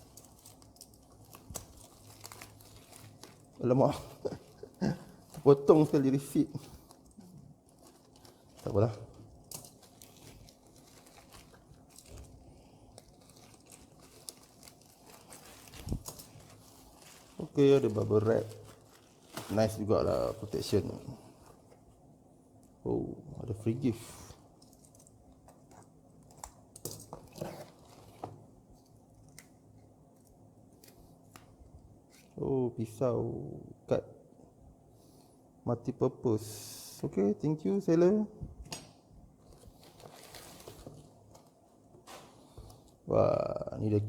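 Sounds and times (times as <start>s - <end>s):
packaging crinkling and rustling: 0.0s - 21.9s, 23.8s - 32.4s, 39.4s - 43.1s
light clicks of packaging: 12.9s - 19.8s.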